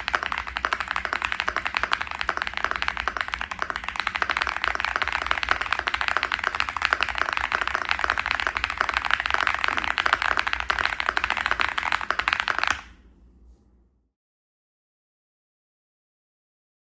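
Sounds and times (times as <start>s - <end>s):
fast mechanical keyboard typing: 0.0s - 12.9s.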